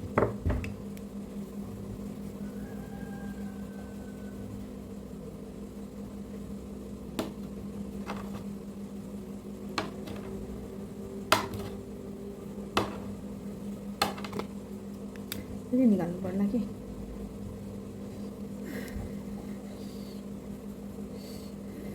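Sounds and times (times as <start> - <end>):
steady low hum: 0.0 - 21.9
kitchenware knocking: 8.1 - 8.4, 9.8 - 10.4, 11.3 - 11.8, 12.8 - 13.2, 14.0 - 14.5.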